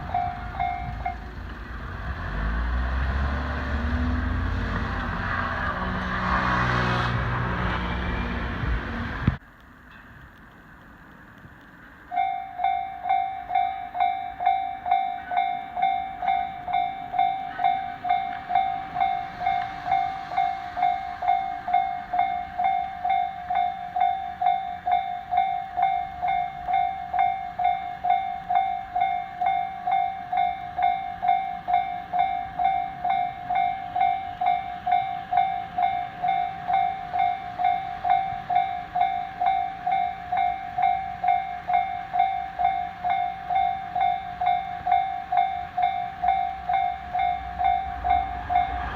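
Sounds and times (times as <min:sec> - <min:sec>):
level crossing warning bell: 0:00.0 - 0:01.4, 0:12.0 - 0:48.9
passing train running: 0:00.0 - 0:48.9.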